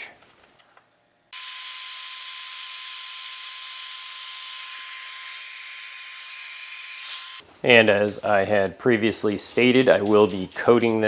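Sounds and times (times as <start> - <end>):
steady hiss: 9.3 - 11.0.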